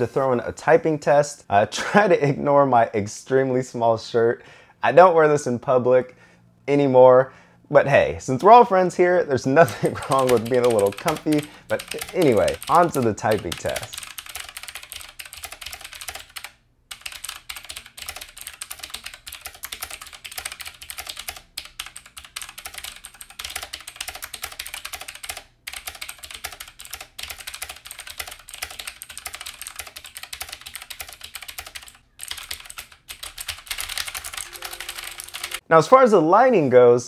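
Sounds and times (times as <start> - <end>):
fast typing on mechanical keyboard: 9.6 - 35.6.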